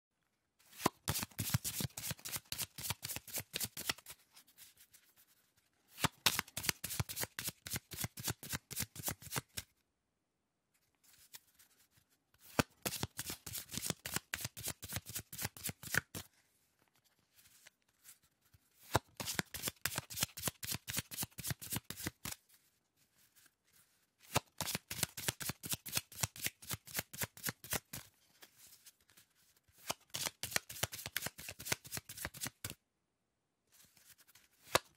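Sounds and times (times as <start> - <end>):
playing cards being shuffled: 0.7 - 4.2, 6.0 - 9.6, 12.5 - 16.3, 18.8 - 22.4, 24.2 - 28.1, 29.8 - 32.8, 33.8 - 34.9.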